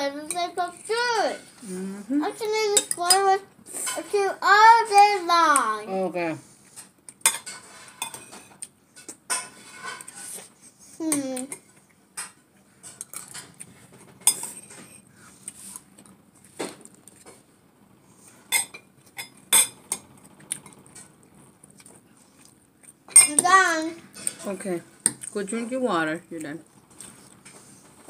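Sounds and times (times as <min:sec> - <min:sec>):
cutlery clinking on a plate: 0:07.2 - 0:10.2.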